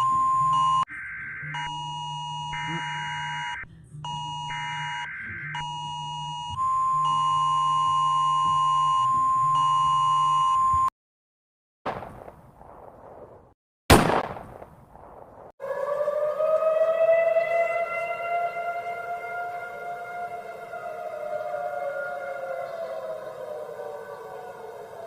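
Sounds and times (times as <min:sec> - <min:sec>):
civil defense siren winding up: 0:00.0 - 0:10.9, 0:15.6 - 0:25.0
high electronic alert tone: 0:02.5 - 0:03.6
sudden booms: 0:11.9 - 0:15.5.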